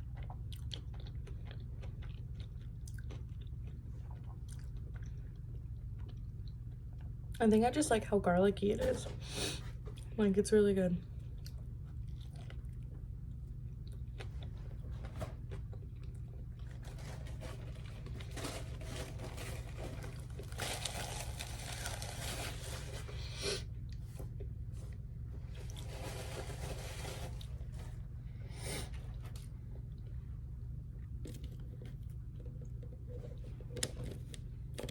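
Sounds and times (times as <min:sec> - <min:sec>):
chewing and crunching food: 0:00.0 - 0:07.4, 0:09.7 - 0:10.2, 0:11.0 - 0:34.9
steady low hum: 0:00.0 - 0:34.9.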